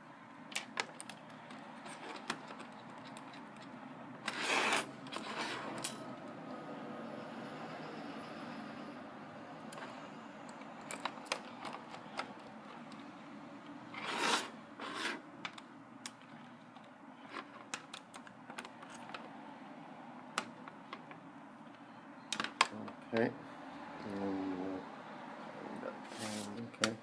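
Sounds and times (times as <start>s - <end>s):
laptop parts clicking and tapping: 0.5s - 4.4s, 17.5s - 19.3s
loud scraping: 4.2s - 6.0s, 13.9s - 15.2s.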